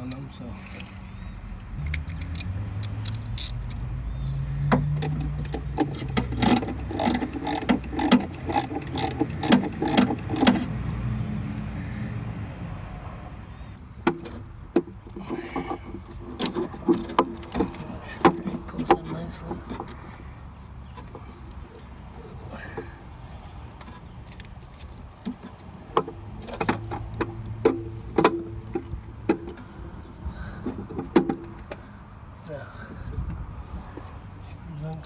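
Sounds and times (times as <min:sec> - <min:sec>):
hand ratchet clicking: 0:01.8 - 0:03.8, 0:05.4 - 0:10.7.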